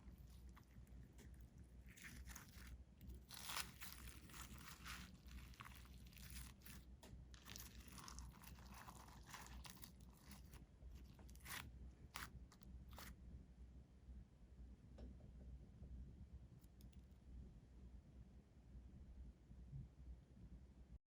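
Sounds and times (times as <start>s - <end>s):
slime squished by hand: 0.0s - 13.1s.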